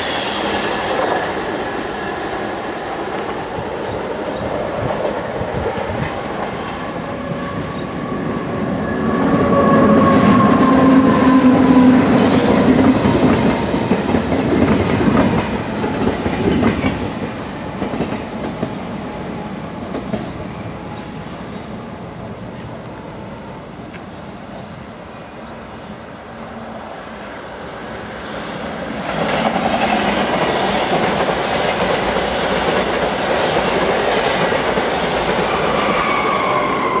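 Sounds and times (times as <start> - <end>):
train whine: 0.0 - 37.0
train wheels clattering on rails: 9.5 - 19.0, 19.8 - 21.0, 28.3 - 37.0.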